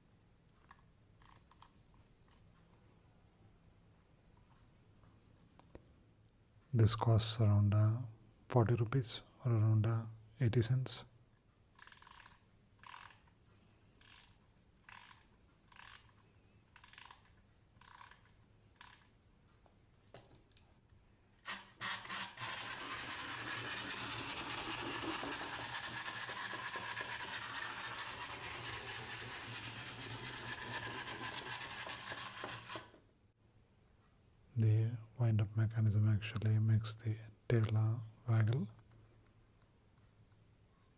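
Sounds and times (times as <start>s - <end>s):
wind-up toy ratchet clicks: 11.7s - 13.4s, 14.0s - 19.1s, 21.4s - 33.0s
clockwork motor whirring: 21.4s - 33.0s.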